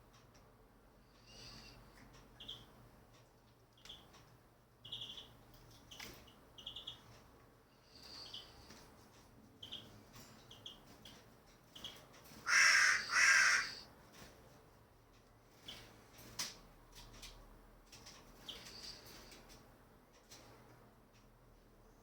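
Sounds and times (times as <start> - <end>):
bird harsh calls: 11.8 - 13.9.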